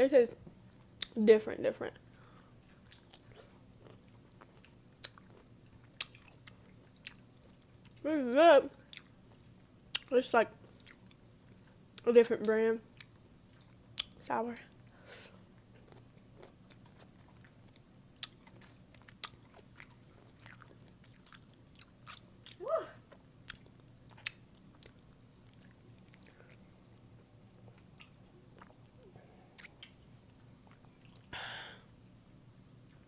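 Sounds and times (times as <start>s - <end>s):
chewing pickles crunching: 2.6s - 8.1s, 8.8s - 12.1s, 12.9s - 14.2s, 15.5s - 29.0s, 29.6s - 31.3s.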